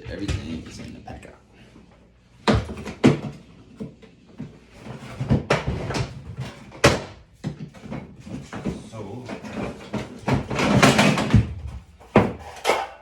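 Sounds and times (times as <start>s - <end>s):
tools clunking and rattling in box: 4.9s - 13.0s.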